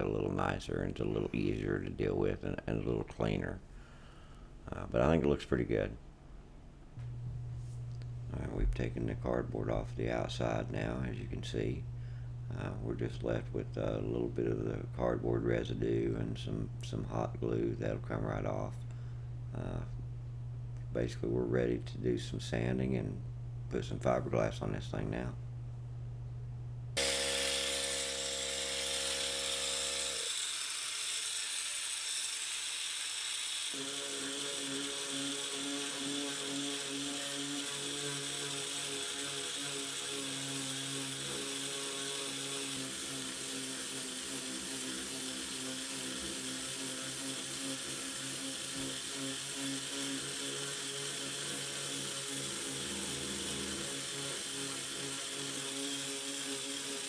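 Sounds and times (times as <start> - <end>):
electric sander on fiberglass: 27.0 - 57.0.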